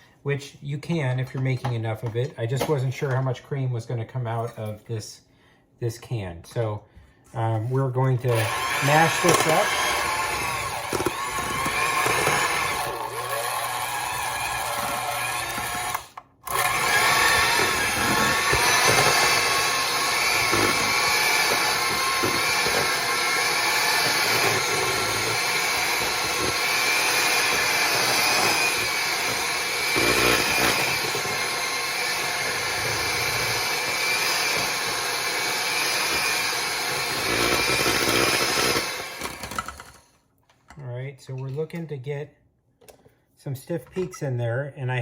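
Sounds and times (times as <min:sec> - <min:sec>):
electric hand mixer whining: 0:08.3 - 0:40.0.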